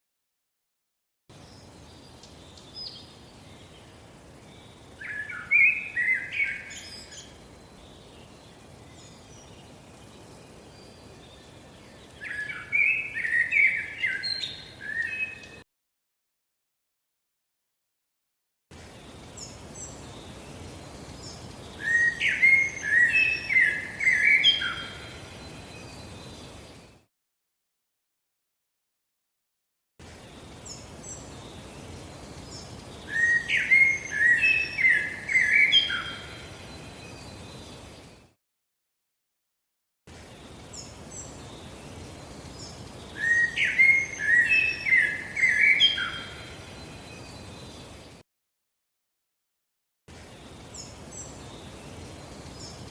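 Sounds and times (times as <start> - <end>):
background hiss: 1.3 - 15.6, 18.7 - 27.1, 30.0 - 38.4, 40.1 - 48.2, 50.1 - 52.9
small birds chirping: 1.3 - 15.6, 18.7 - 27.1, 30.0 - 38.4, 40.1 - 48.2, 50.1 - 52.9.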